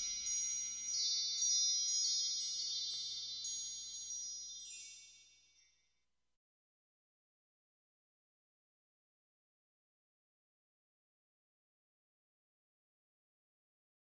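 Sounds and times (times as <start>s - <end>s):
high bright chimes ringing: 0.0s - 5.8s.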